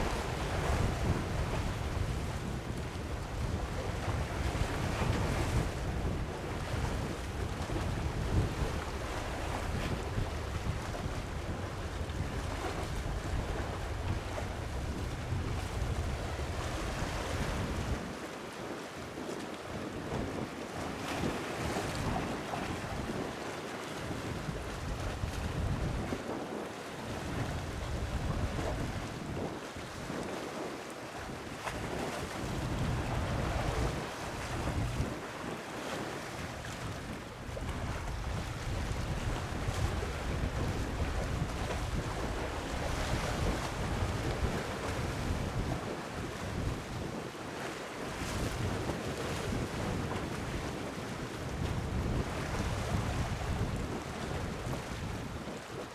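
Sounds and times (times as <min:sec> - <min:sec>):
wind buffeting microphone: 0:00.0 - 0:18.1, 0:24.0 - 0:26.3, 0:27.2 - 0:30.2, 0:31.6 - 0:35.3, 0:36.6 - 0:47.2, 0:48.2 - 0:50.3, 0:51.6 - 0:54.0
sea waves: 0:31.5 - 0:45.7.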